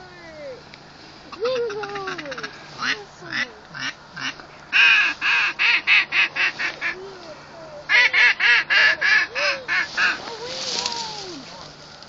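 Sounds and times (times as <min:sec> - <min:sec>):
duck call quacks: 0:01.4 - 0:07.0, 0:07.9 - 0:10.2.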